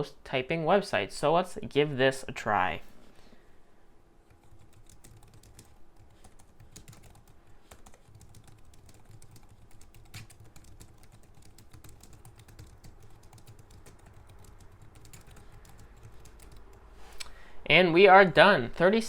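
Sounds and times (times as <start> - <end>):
keyboard typing clicks: 4.3 - 16.7.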